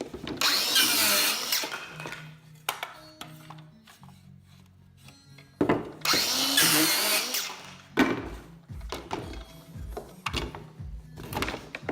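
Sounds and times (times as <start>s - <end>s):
power tool running: 0.4s - 2.0s, 6.0s - 7.8s.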